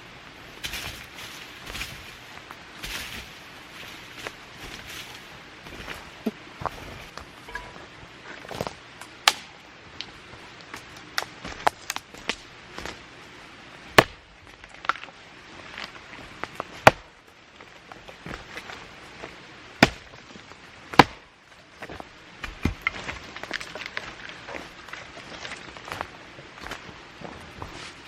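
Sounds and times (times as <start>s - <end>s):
dry wood cracking: 8.3s - 13.0s, 13.9s - 26.2s
wood snapping and crackling: 8.3s - 13.0s, 13.9s - 26.0s.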